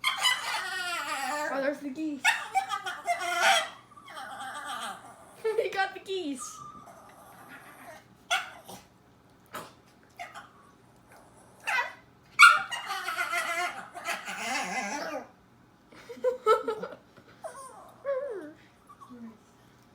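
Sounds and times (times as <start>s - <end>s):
dog whining: 0.0s - 1.6s, 2.2s - 5.4s, 6.4s - 8.8s, 10.2s - 15.3s, 17.4s - 19.4s
dog yelping: 0.0s - 1.6s, 2.2s - 5.2s, 6.6s - 8.8s, 10.2s - 10.6s, 11.6s - 15.3s.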